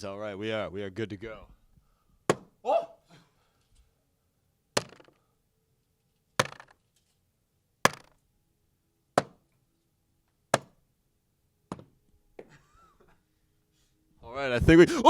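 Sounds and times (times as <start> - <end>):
darts thudding into dartboard: 4.8 - 5.2, 6.4 - 6.8, 7.9 - 8.2, 11.7 - 11.9.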